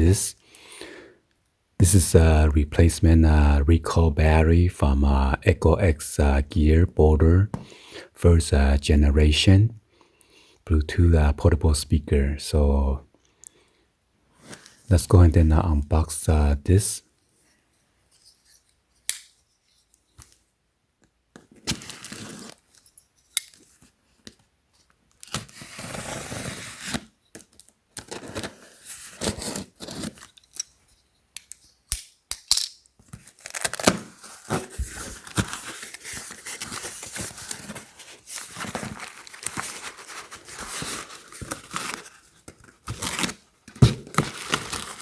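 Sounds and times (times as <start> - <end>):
packaging ripping and crinkling: 33.1 - 45.0.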